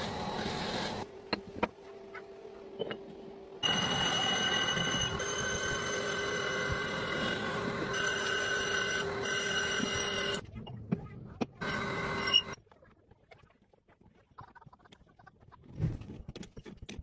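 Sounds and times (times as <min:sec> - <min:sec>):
power tool motor whining: 0:03.6 - 0:10.4.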